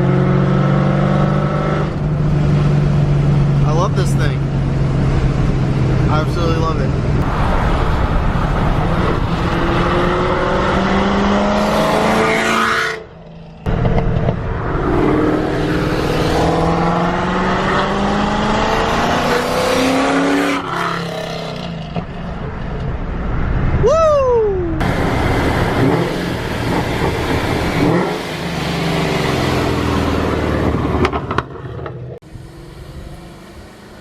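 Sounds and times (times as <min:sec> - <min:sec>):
supercharged car engine accelerating: 0:07.4 - 0:13.1, 0:13.7 - 0:21.7, 0:24.8 - 0:31.2.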